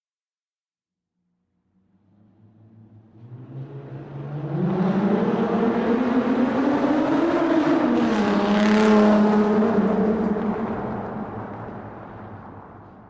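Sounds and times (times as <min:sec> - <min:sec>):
car engine accelerating: 0:02.0 - 0:13.0
road and air noise: 0:05.2 - 0:13.0.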